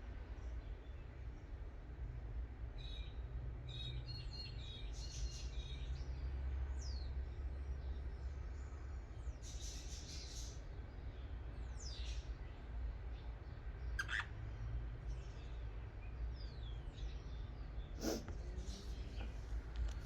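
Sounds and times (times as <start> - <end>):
budgerigars chirping: 13.9 - 14.4.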